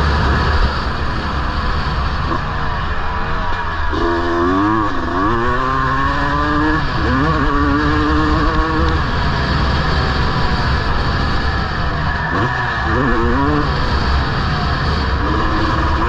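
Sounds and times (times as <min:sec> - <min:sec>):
rumbling wind noise: 0:00.0 - 0:16.0
motocross engine revving: 0:03.9 - 0:16.0.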